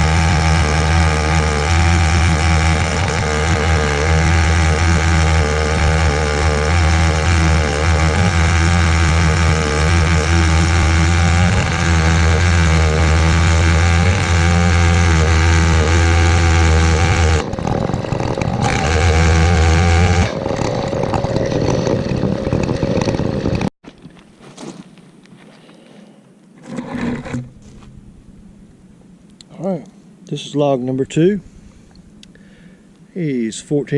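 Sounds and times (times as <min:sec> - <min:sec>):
chainsaw cutting a log: 0:00.0 - 0:23.7.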